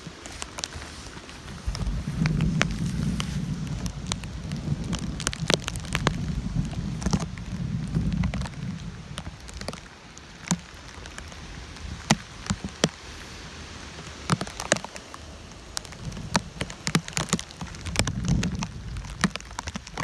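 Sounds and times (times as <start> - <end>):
heavy rain falling: 0.0 - 20.0
raindrops ticking close by: 0.0 - 20.0
low rumble: 1.3 - 10.0.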